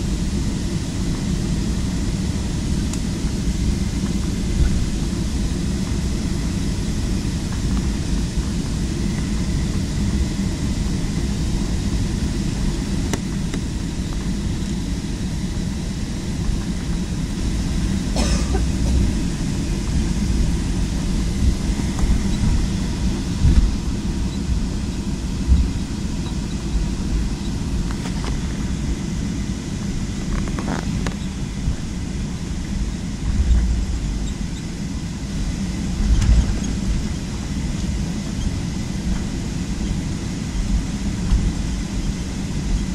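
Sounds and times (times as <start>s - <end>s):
airliner cabin low rumble: 0.0s - 42.9s.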